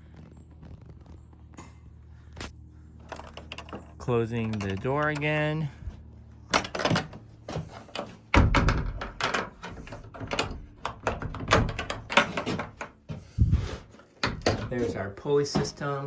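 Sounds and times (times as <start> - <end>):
wooden door knocks and thumps: 8.3 - 13.3.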